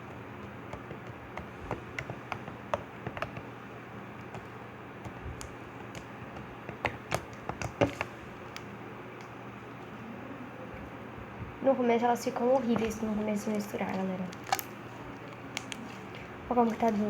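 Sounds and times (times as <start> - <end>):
slime squeezed clicking and popping: 14.4 - 14.7.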